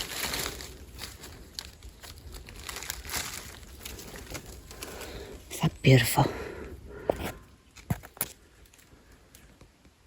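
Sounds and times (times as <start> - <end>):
leaf litter rustling and crackling: 0.0 - 5.5.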